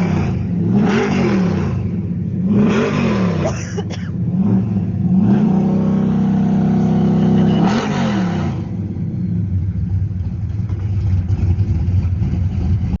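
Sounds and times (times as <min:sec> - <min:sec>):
engine revving and idling: 0:00.0 - 0:13.0.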